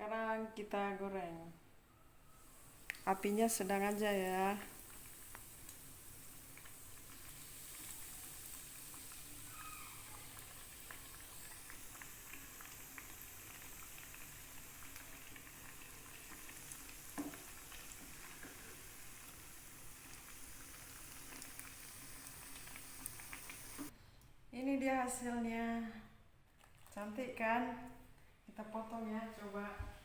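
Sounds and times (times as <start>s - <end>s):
food frying in hot oil: 2.4s - 23.9s.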